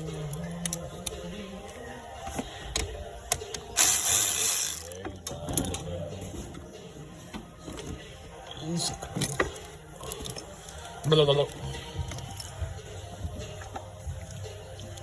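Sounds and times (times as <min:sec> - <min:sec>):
loud burst of hiss: 0:03.8 - 0:04.9.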